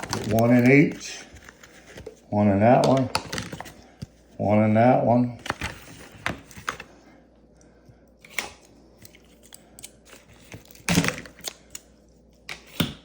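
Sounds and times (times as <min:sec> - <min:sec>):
plastic parts clicking and rustling: 0:00.0 - 0:02.2, 0:02.8 - 0:03.8, 0:08.3 - 0:11.8.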